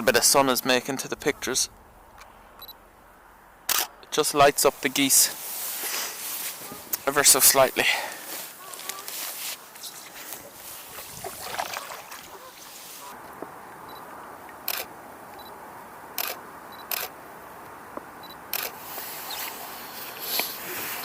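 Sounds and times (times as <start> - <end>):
camera shutter clicks: 3.7 - 3.9, 14.7 - 14.9, 16.2 - 17.1, 18.5 - 18.8.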